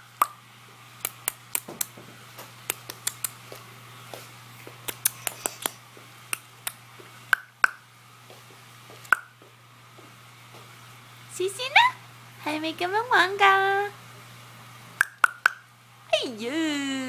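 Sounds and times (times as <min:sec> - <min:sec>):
tongue clicking: 0:02.7 - 0:03.4, 0:04.9 - 0:06.8.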